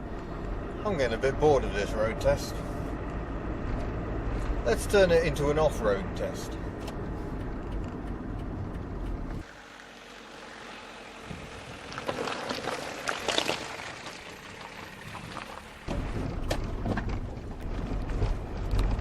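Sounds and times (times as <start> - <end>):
diesel engine and road noise: 0.0 - 19.0
wind: 0.0 - 19.0
crunching and knocking on rough track: 3.1 - 4.6, 11.3 - 19.0.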